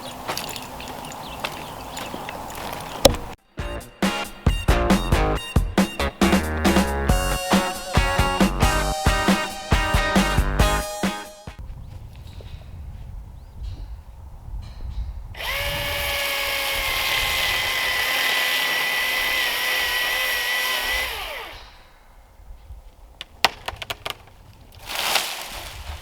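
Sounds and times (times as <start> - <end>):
power drill running: 15.4 - 21.8.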